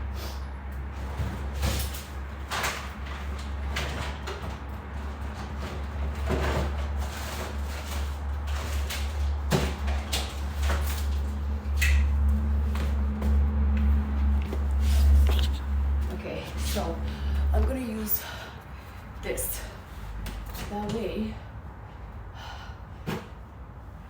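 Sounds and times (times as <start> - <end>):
steady low hum: 5.0 - 24.0.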